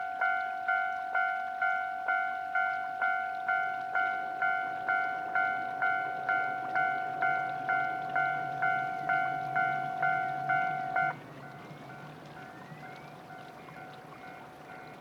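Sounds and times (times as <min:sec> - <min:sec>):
level crossing bell ringing: 0:03.1 - 0:11.2
low hum: 0:05.4 - 0:11.2.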